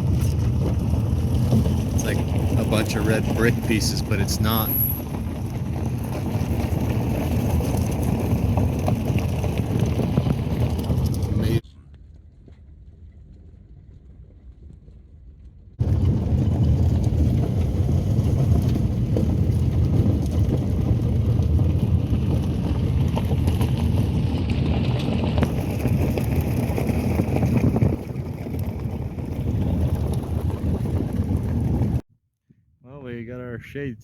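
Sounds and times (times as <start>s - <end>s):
vehicle rumble on dirt road: 0.0s - 32.0s.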